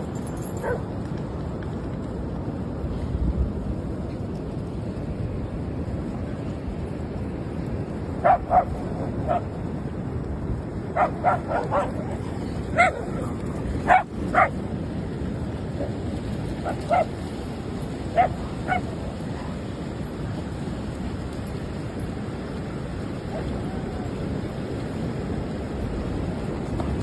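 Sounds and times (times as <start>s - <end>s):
wind: 0.0s - 27.0s
dog barking: 0.6s - 0.8s, 8.2s - 9.5s, 11.0s - 14.6s, 16.6s - 17.1s, 18.1s - 18.9s
surf rushing: 5.0s - 27.0s.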